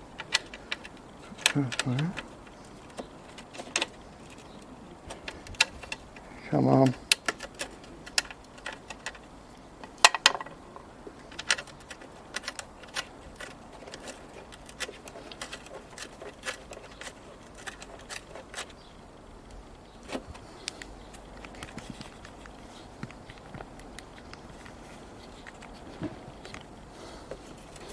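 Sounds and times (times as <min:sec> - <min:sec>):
metal nuts and tools clinking: 0:00.0 - 0:18.8
tools clattering: 0:06.8 - 0:18.8.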